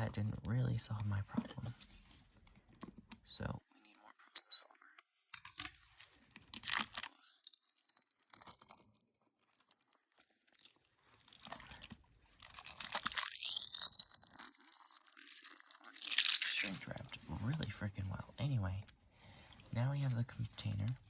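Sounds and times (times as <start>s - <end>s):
plastic shrink wrap crinkling: 5.3s - 17.3s.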